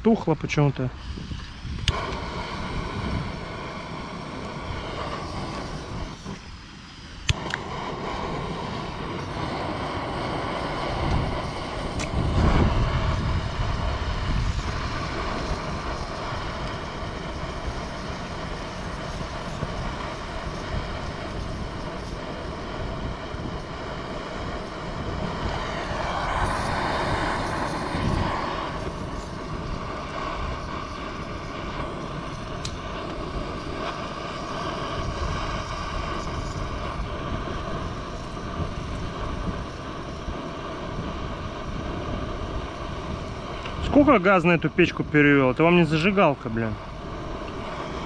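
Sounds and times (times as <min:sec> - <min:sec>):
gas torch roaring: 0:00.0 - 0:48.0
torch igniter click: 0:01.3 - 0:03.4, 0:04.0 - 0:39.6, 0:47.4 - 0:48.0.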